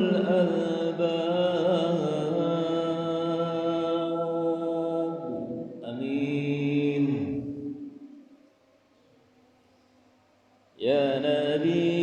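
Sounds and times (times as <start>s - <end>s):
person chanting: 0.0s - 8.0s, 10.8s - 12.0s.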